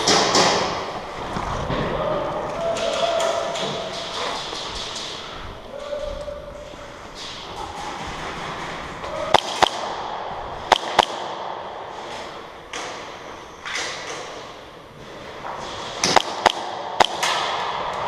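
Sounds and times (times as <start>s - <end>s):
airsoft gun shots: 9.3s - 11.8s, 16.0s - 17.9s.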